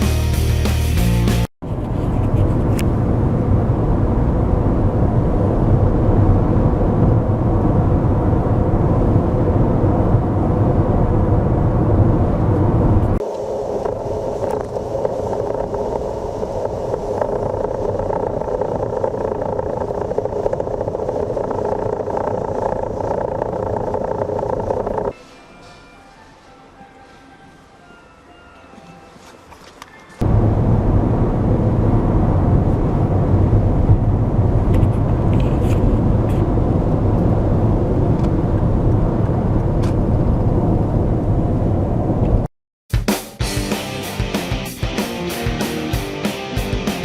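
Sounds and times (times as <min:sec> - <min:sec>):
heavy low rumble: 0:00.0 - 0:25.2, 0:30.2 - 0:42.5.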